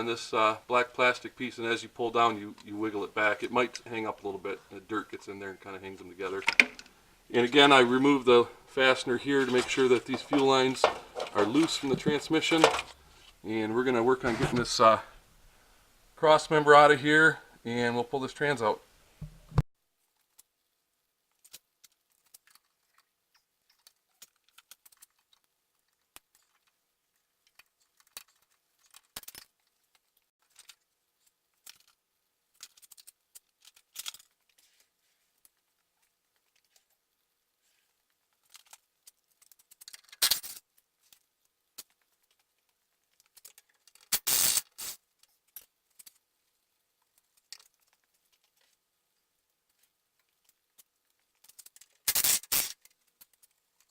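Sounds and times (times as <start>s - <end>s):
metal clanks and scrapes: 9.3s - 13.0s, 14.2s - 14.8s
hand tools clinking on metal: 9.4s - 13.0s.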